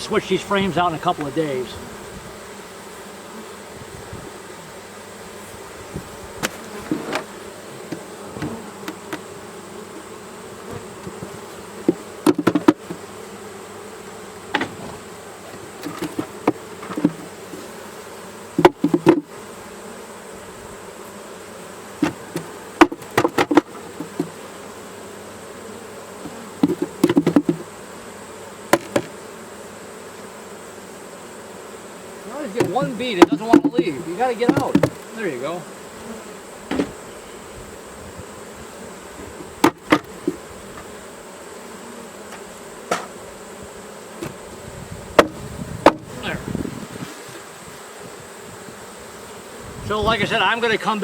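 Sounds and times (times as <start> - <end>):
honeybees buzzing: 0.0 - 51.0
sharp knocks and taps: 32.6 - 35.0.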